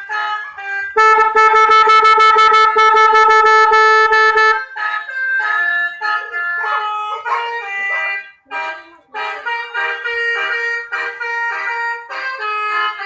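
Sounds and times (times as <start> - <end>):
multi-trumpet horn playing tune: 0.0 - 13.0.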